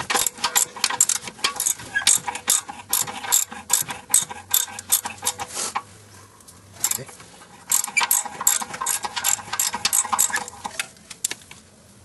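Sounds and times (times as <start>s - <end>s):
ratchet wrench clicking: 0.1s - 5.4s, 7.7s - 10.6s.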